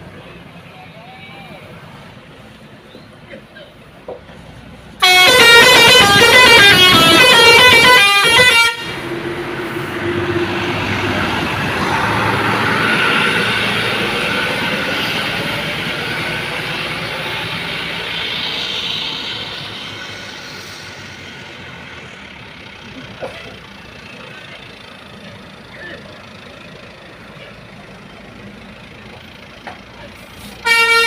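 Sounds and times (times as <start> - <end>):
bus passing: 0.0 - 31.0
bus horn playing melody: 5.0 - 9.1, 30.6 - 31.0.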